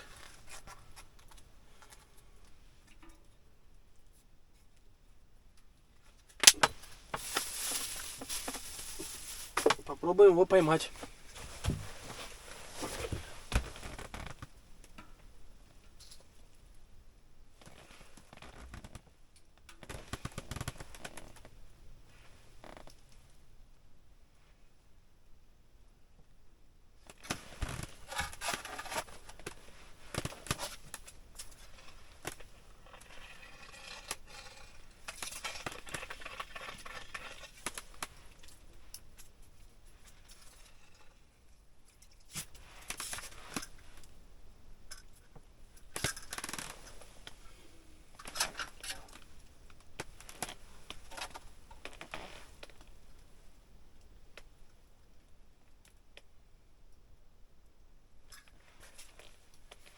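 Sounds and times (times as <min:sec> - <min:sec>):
handling clicks and scrapes: 0:06.1 - 0:10.0, 0:27.1 - 0:44.2, 0:44.9 - 0:52.9.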